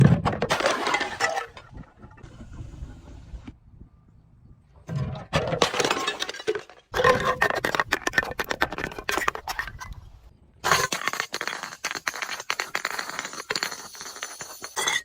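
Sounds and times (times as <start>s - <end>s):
glass bottles crushing: 0.4s - 1.9s, 4.9s - 9.9s, 10.6s - 15.0s.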